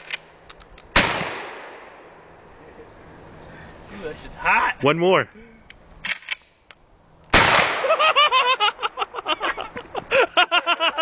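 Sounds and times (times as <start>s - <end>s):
loud gunshot: 1.0s - 1.7s, 7.3s - 8.0s
person laughing: 7.8s - 11.0s.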